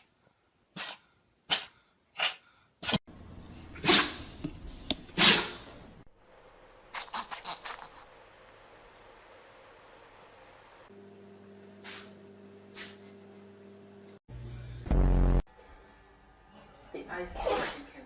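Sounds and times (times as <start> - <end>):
dogs sneezing: 3.8 - 4.3, 5.2 - 5.7.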